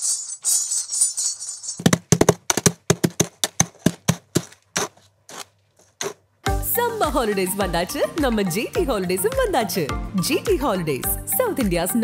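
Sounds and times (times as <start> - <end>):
rapid sharp taps: 1.8 - 5.0.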